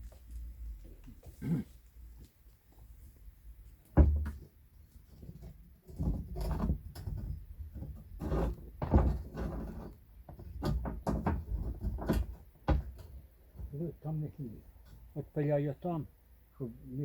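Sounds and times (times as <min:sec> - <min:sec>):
knocks scrapes and clatter: 0:04.1 - 0:13.8.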